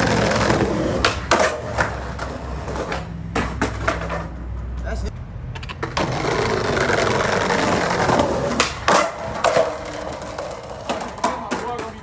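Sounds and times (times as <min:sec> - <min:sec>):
skateboard clacking and landing: 0:00.0 - 0:04.5, 0:05.6 - 0:12.0
skateboard wheels rolling: 0:00.0 - 0:04.9, 0:05.6 - 0:12.0.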